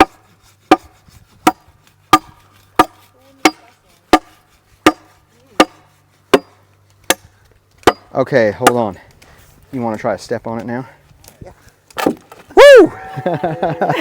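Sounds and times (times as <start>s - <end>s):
machete chopping into log: 11.9s - 12.4s.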